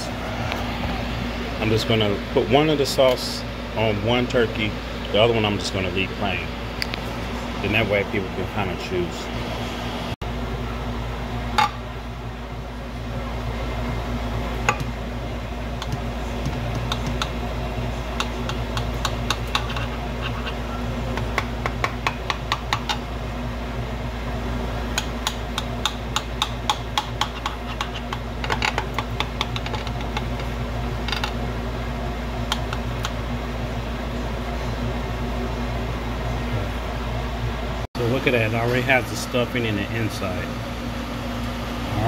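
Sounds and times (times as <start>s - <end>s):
steady mechanical hum: 0.0s - 42.0s
utensils clicking and tapping: 15.8s - 17.4s, 18.2s - 23.0s, 25.0s - 31.4s.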